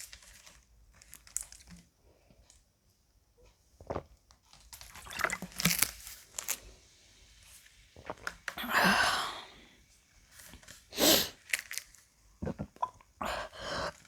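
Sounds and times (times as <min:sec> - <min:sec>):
sips and gulps from bottle: 0:04.8 - 0:06.6, 0:08.0 - 0:09.6, 0:12.4 - 0:14.0.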